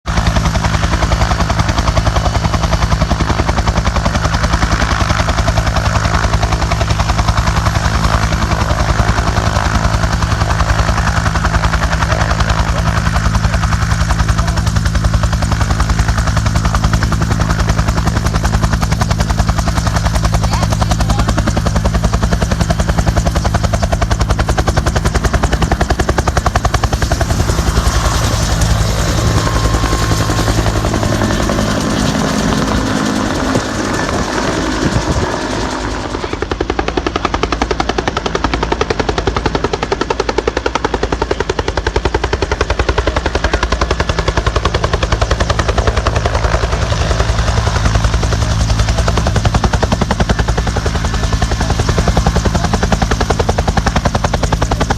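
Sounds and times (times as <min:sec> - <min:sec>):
heavy engine running: 0:20.3 - 0:36.6.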